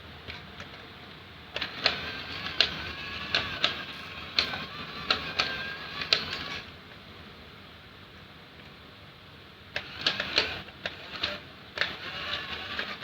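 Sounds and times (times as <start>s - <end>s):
small electric motors whining: 1.6s - 6.7s, 9.8s - 13.0s.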